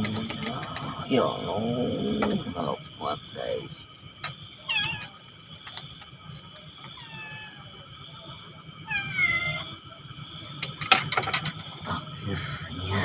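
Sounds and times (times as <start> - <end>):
high-pitched background drone: 0.0 - 13.0
cat meowing: 4.7 - 5.1, 7.0 - 7.7, 8.8 - 9.7.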